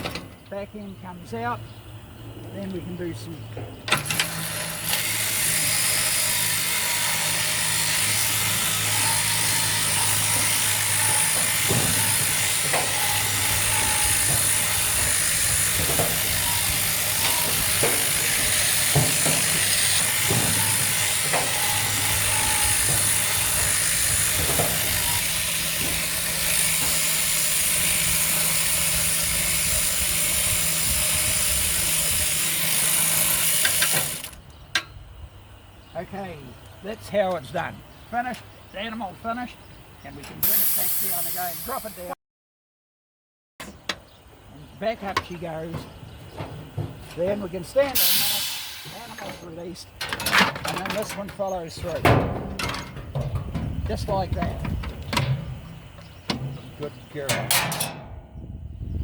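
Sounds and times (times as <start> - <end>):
electric shearing handpiece running: 4.0 - 34.4, 48.0 - 49.3
scattered knocks: 4.9 - 28.7, 45.1 - 47.6, 50.0 - 58.0.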